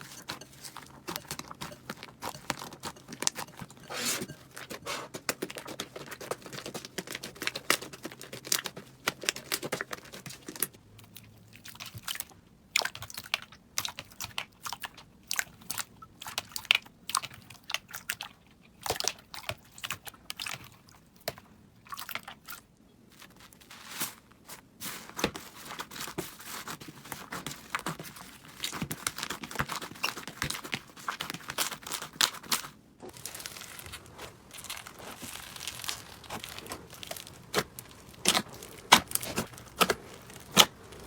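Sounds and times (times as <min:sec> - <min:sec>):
slime crackling and popping: 0:28.6 - 0:41.0.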